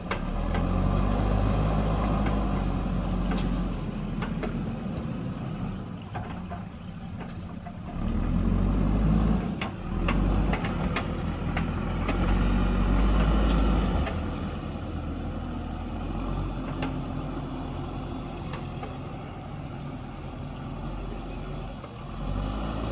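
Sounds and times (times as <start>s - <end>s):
diesel engine under load: 0.0s - 22.9s.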